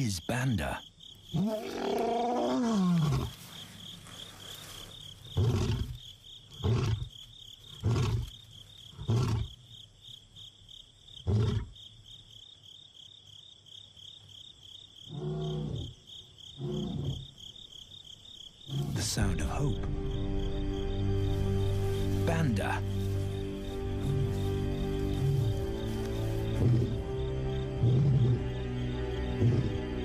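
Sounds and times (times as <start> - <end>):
high insect trill: 0.0 - 30.0
lion roaring and grunting: 1.3 - 3.4, 5.4 - 6.0, 6.6 - 7.1, 16.6 - 17.3, 27.8 - 28.5, 29.3 - 29.9.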